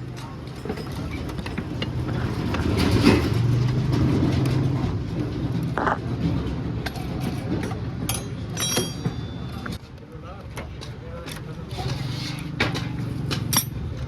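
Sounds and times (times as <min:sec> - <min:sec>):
engine ticking and rattling: 0:00.0 - 0:09.8.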